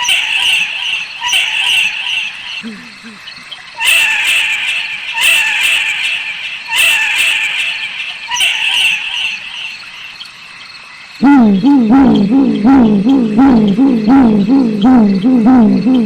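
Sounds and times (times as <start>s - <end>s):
owl raspy screeches: 0.0s - 2.6s, 3.5s - 10.4s
wavering low owl hoot: 0.0s - 10.2s, 11.2s - 16.0s.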